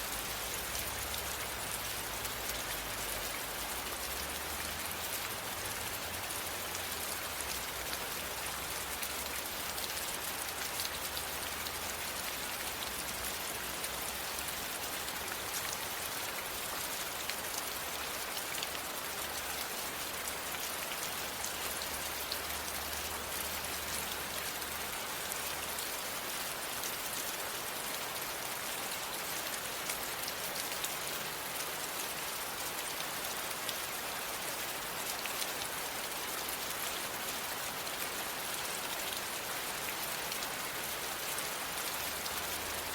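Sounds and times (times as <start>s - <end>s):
rain pattering on a surface: 0.0s - 42.9s.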